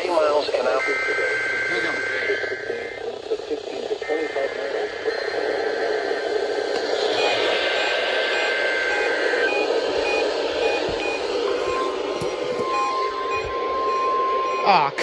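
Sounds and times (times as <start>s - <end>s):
high data tones: 0.0s - 15.0s
radio static hiss: 0.0s - 15.0s
single-pitch alarm tone: 0.8s - 3.0s, 7.2s - 14.9s.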